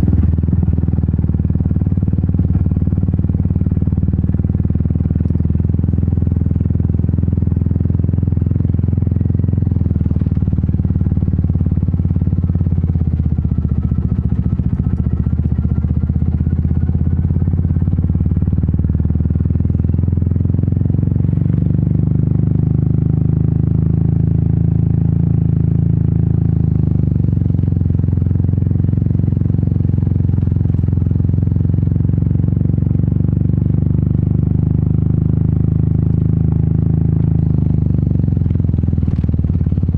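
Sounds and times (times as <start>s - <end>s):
motorcycle engine thumping: 8.6s - 20.0s, 36.9s - 39.9s.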